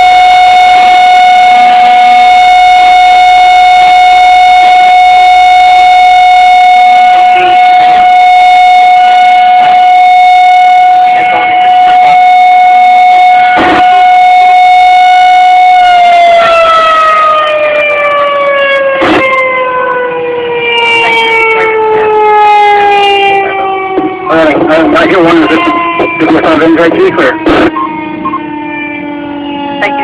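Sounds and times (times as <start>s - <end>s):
warning siren winding down: 0.0s - 30.0s.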